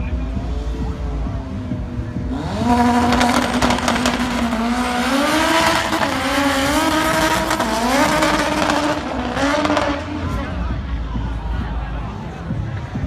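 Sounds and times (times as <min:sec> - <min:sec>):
drag car engine at high revs: 0:00.5 - 0:10.5.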